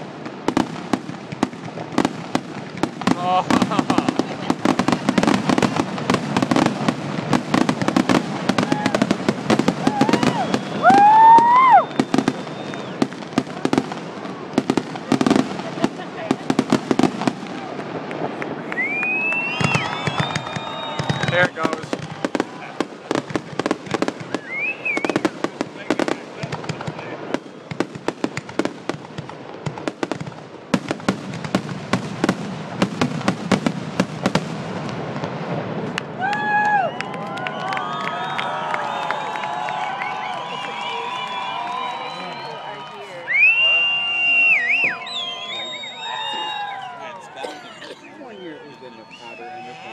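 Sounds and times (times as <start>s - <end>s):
fireworks crackling and popping: 0.0s - 49.9s
rising whistle of firework: 8.5s - 13.5s, 18.6s - 22.7s, 24.0s - 25.9s, 27.2s - 28.0s, 36.1s - 47.2s, 48.3s - 49.9s.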